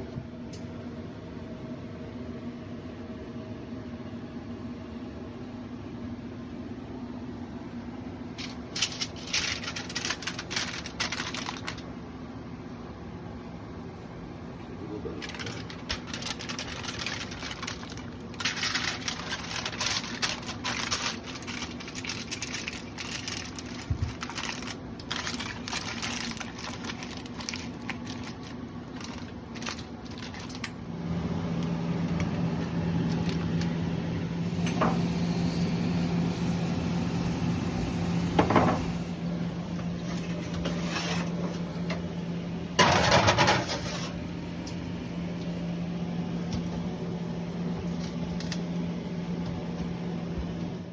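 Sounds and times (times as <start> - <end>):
low mechanical motor hum: 0.0 - 50.9
handling clicks and scrapes: 8.4 - 11.8, 15.2 - 30.7.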